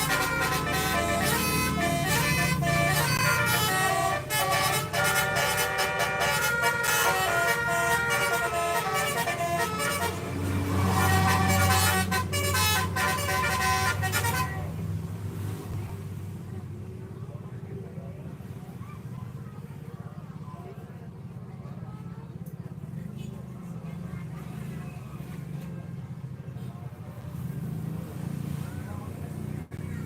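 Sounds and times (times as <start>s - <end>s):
bus horn playing a melody: 0.0s - 14.9s
bus engine rumble: 0.0s - 30.0s.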